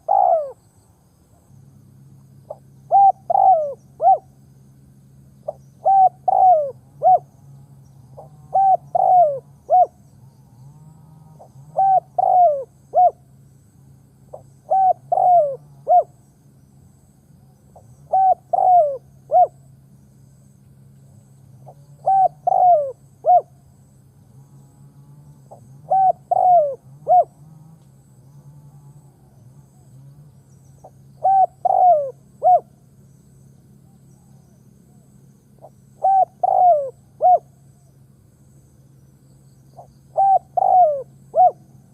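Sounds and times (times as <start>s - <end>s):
dove cooing: 0.0s - 0.6s, 2.4s - 4.4s, 5.4s - 7.3s, 8.0s - 10.0s, 11.1s - 13.2s, 14.3s - 16.2s, 17.8s - 19.6s, 21.6s - 23.6s, 25.5s - 27.8s, 30.8s - 32.8s, 35.6s - 37.6s, 39.8s - 41.9s
faint low hum: 0.0s - 41.9s.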